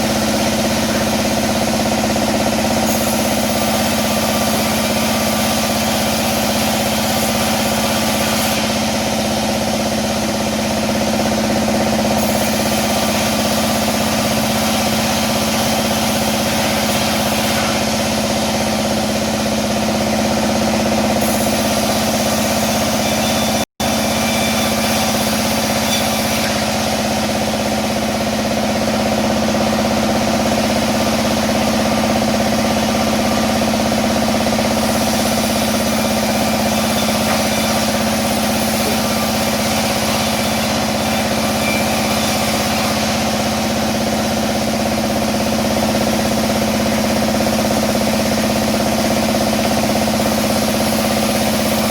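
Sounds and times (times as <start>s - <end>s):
band saw humming: 0.0s - 51.9s.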